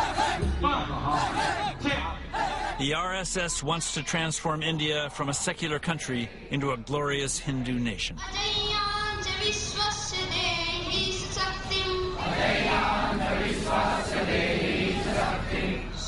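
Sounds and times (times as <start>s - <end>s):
group of voices singing: 0.0s - 0.5s, 12.2s - 16.0s.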